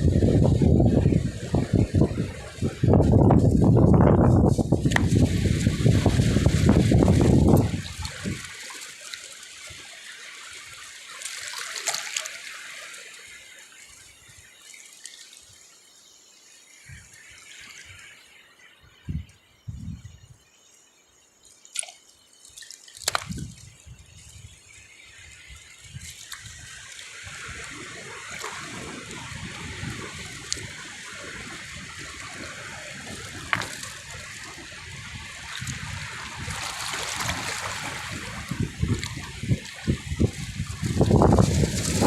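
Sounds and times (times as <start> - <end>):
water trickling and splashing: 0.0 - 42.0.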